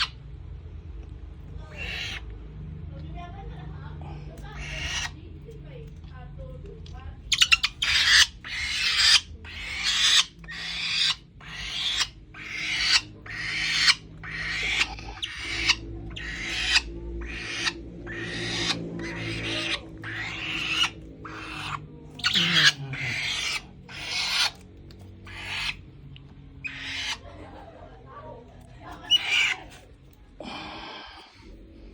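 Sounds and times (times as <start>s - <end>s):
falcon raspy hissing calls: 7.9s - 24.5s.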